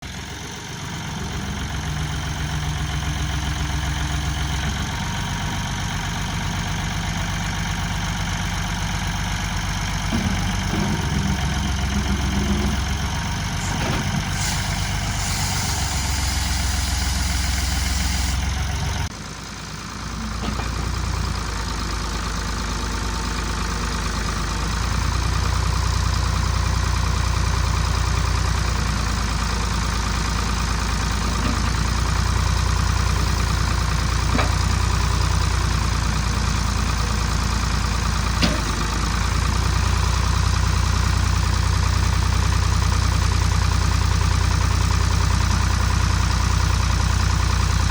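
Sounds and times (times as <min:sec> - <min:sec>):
diesel backhoe engine running: 0:00.0 - 0:47.9
brief hiss: 0:14.4 - 0:18.5.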